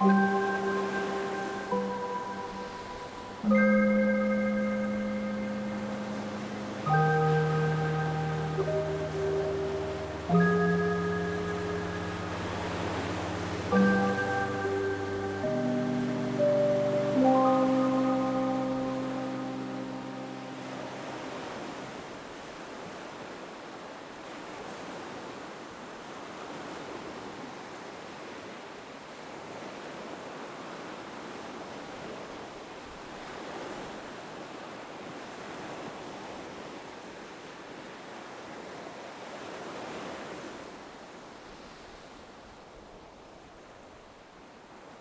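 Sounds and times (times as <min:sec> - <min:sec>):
ocean surf washing in: 0:00.0 - 0:23.3.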